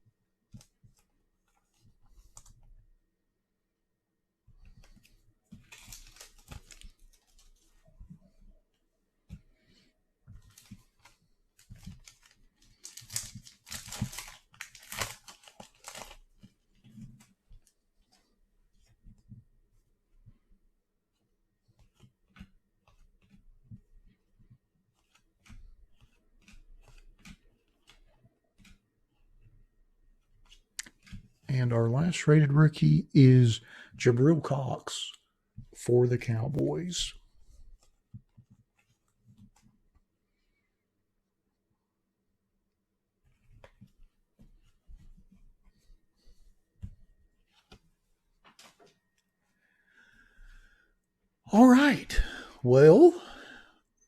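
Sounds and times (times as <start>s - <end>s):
trading cards clicking and rustling: 4.8s - 7.7s, 10.4s - 17.4s.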